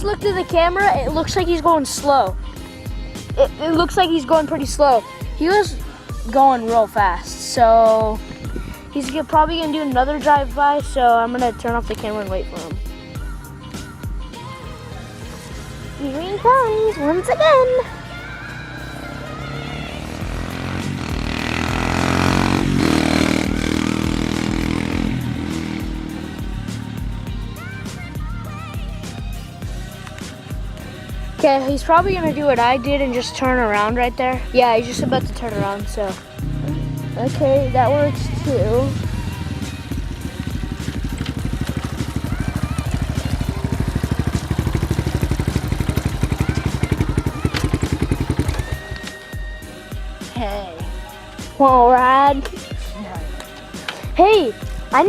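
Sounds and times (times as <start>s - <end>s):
motorbike engine passing by: 14.4s - 30.0s, 36.3s - 49.1s.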